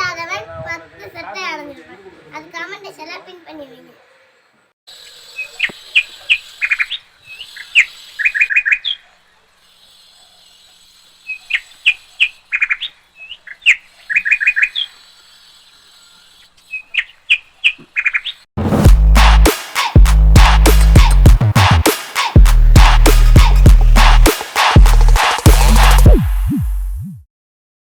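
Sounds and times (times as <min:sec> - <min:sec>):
small birds chirping: 0:02.5 - 0:18.5.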